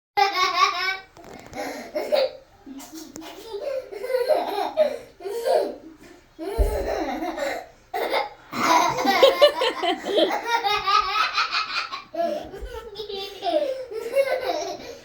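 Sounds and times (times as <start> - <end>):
girl laughing: 6.6 - 15.0.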